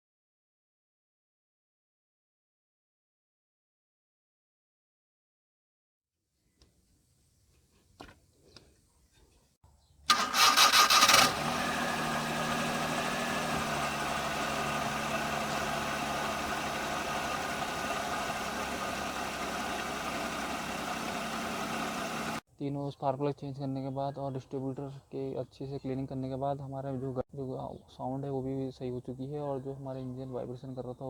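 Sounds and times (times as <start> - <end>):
car engine idling: 10.1 - 22.4
starter motor cranking: 10.1 - 22.4.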